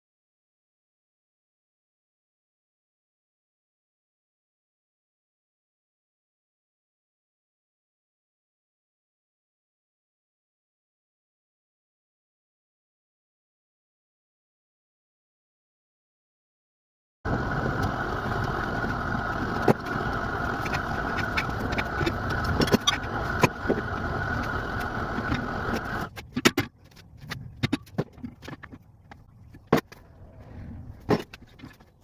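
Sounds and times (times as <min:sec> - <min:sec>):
forge rushing noise: 0:17.3 - 0:26.4.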